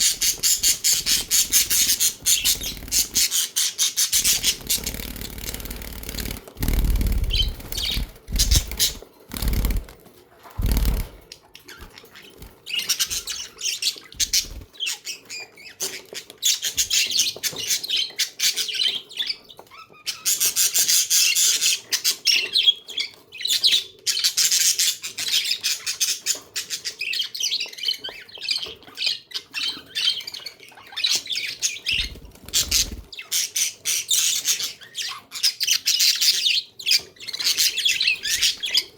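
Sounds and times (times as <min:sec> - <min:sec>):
budgerigars chattering: 0:00.0 - 0:09.8.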